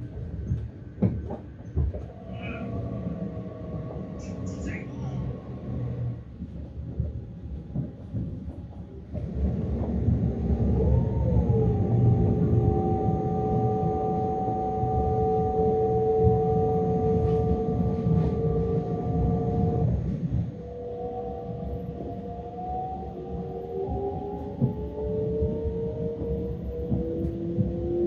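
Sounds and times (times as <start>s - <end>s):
train rumble: 0.0s - 28.0s
two-note train whine: 10.3s - 28.0s.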